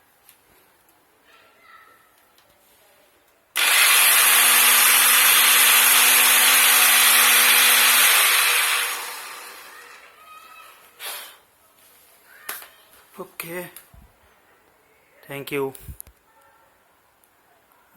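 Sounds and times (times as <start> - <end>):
blender motor whirring: 3.6 - 10.1.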